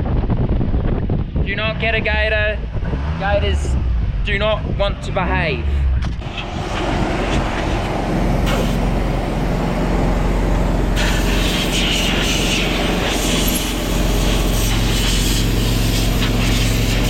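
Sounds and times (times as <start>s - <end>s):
utility vehicle engine running: 2.4s - 17.0s
bright hiss: 11.0s - 17.0s.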